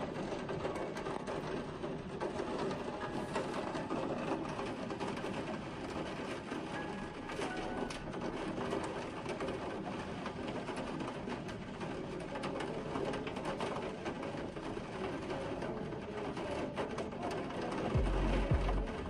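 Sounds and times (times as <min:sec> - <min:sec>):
heavy rain falling: 0:00.0 - 0:19.0.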